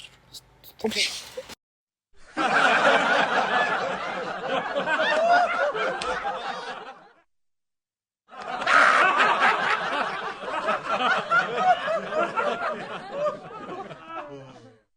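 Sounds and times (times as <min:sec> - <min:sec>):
group laughing: 0:02.3 - 0:07.2, 0:08.4 - 0:14.8.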